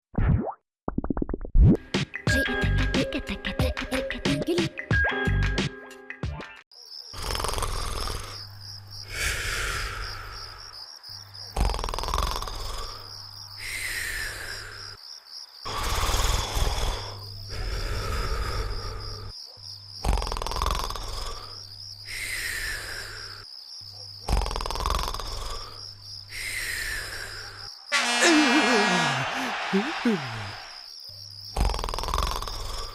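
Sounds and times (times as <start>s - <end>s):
cricket-like trill: 6.7s - 32.9s
cartoon snoring: 7.1s - 10.6s, 11.5s - 15.0s, 15.7s - 19.4s, 20.0s - 23.4s, 24.2s - 25.8s, 26.4s - 30.8s, 31.5s - 32.9s.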